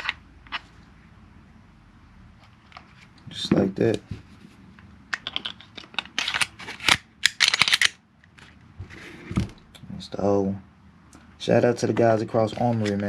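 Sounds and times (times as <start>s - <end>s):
pistol metal clicks and scrapes: 5.1s - 8.5s.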